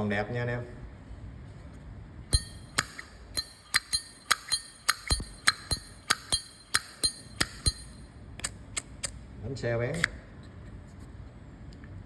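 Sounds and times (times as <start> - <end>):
lighter lid clacking: 2.4 - 9.2.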